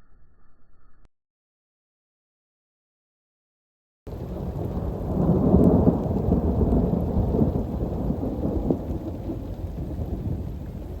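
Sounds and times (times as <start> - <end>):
rain falling: 4.1 - 11.0
rolling thunder: 4.1 - 11.0.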